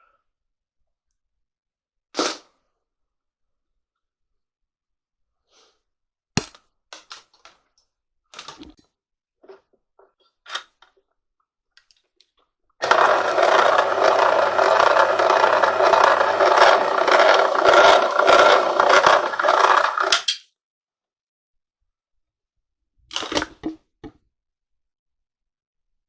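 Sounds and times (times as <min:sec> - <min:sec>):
wire stripping machine rattling: 0:12.8 - 0:20.4.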